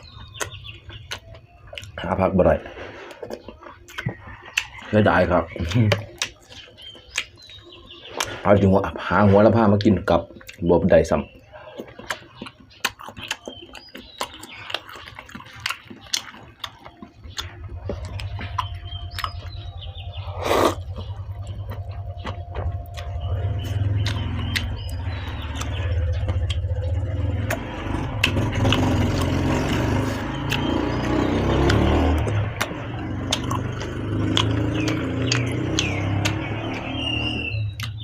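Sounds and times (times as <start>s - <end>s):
vehicle engine rumbling: 16.5s - 38.0s.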